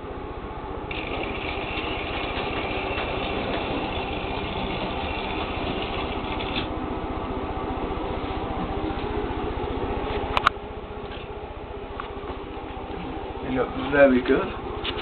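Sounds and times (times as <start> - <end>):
mechanical running noise: 0.8 - 9.9
small electric motor whine: 0.9 - 6.7.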